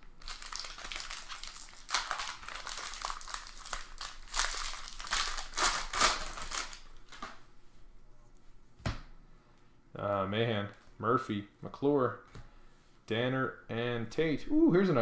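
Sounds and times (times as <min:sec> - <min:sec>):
foil wrapper crinkling: 0:00.1 - 0:07.4.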